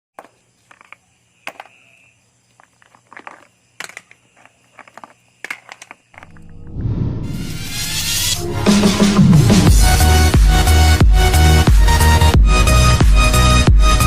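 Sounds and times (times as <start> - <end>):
handling clicks and crackles: 0.2 - 1.9, 2.5 - 6.5
low rising sound: 6.2 - 8.7.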